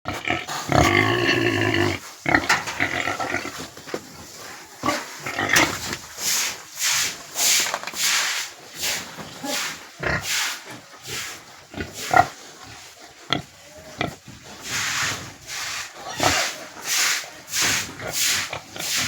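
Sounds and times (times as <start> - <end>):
pigs calling: 0.1 - 3.6, 8.8 - 19.0.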